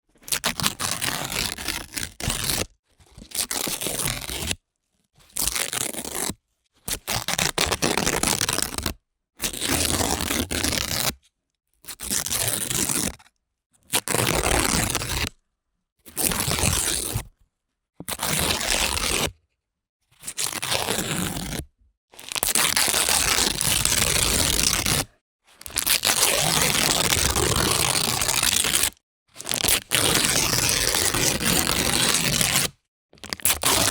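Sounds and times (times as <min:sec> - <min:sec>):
paper tearing: 0:22.3 - 0:25.1, 0:25.7 - 0:33.9.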